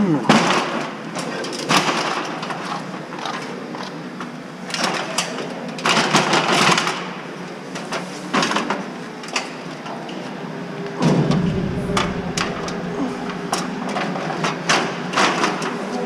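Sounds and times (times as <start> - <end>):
diesel engine running: 11.0 - 13.7.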